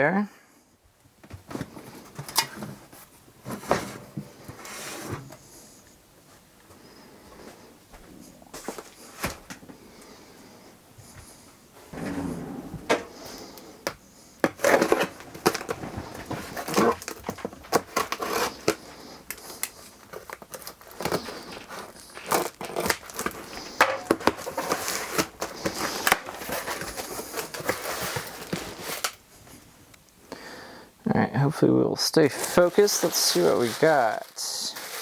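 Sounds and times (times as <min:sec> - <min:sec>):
packing tape tearing: 0:14.4 - 0:29.2, 0:32.4 - 0:35.0
cardboard crinkling: 0:14.4 - 0:29.3, 0:32.2 - 0:35.0.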